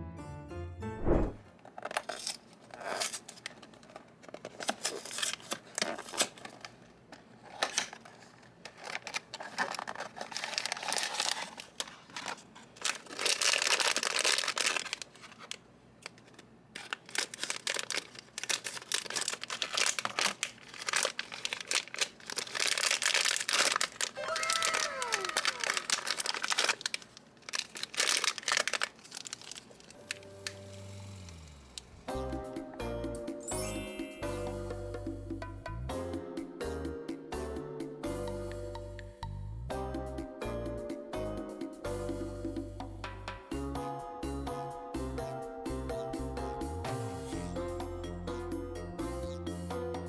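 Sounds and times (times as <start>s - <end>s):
plastic and foil wrapping crinkling: 1.7s - 30.7s.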